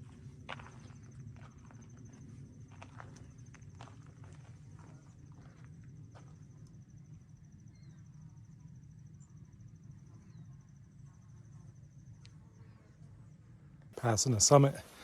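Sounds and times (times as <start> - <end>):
faint insect trill: 0.0 - 15.0
footsteps on trail: 0.4 - 6.4.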